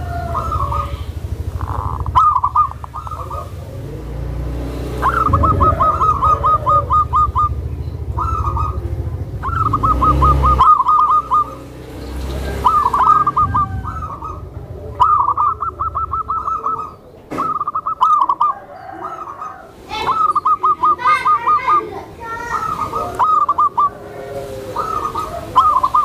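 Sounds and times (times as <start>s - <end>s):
low rumble: 0.0s - 10.6s, 11.6s - 17.1s
doves calling in rapid trills: 0.0s - 26.0s.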